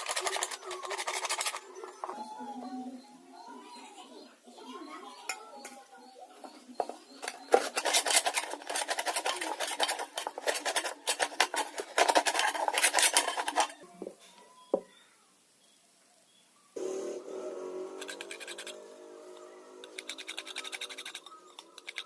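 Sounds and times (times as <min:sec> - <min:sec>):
sheet metal clicking and scraping: 0:00.0 - 0:01.6, 0:07.2 - 0:13.8.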